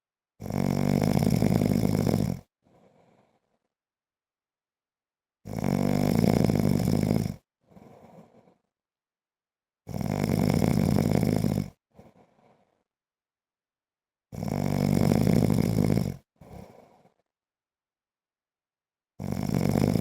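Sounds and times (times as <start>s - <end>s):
man snoring: 0.4s - 3.6s, 5.4s - 8.7s, 9.9s - 12.8s, 14.3s - 17.2s, 19.2s - 20.0s
soft breath sound: 2.6s - 3.8s, 7.6s - 8.8s, 11.9s - 12.9s, 16.4s - 17.3s.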